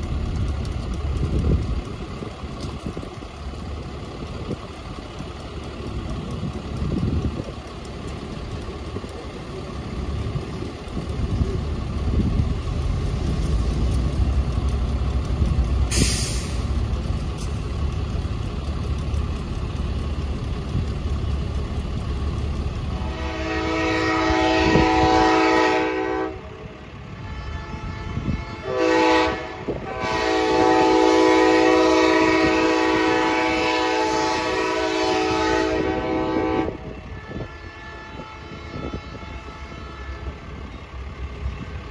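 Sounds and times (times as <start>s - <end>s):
diesel locomotive rumbling: 0.0s - 41.9s
train air horn blasts: 22.9s - 40.6s.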